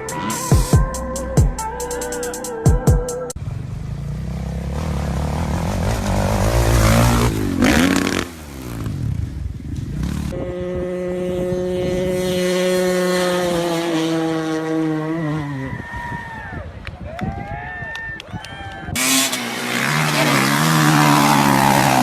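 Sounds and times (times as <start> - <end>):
dirt bike engine revving: 3.4 - 15.7, 19.0 - 22.0.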